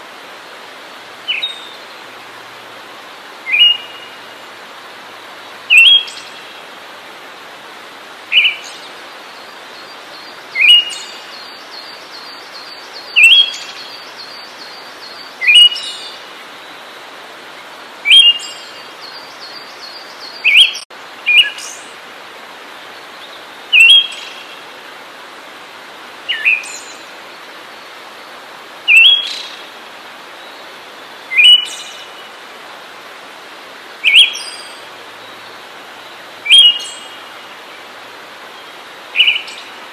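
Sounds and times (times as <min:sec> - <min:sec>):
background hiss: 0:00.0 - 0:39.9
songbird rising call: 0:03.4 - 0:04.3, 0:05.7 - 0:06.4, 0:08.3 - 0:16.8, 0:18.0 - 0:21.8, 0:28.9 - 0:29.7, 0:31.2 - 0:32.4, 0:34.0 - 0:37.5, 0:38.5 - 0:39.8.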